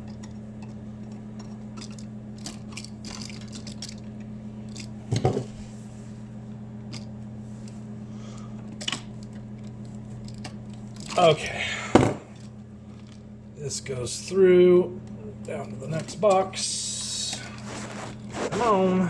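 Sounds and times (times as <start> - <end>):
wires clicking and rustling: 0.0 - 5.2, 8.6 - 11.4, 17.2 - 18.8
steady low hum: 0.0 - 19.0.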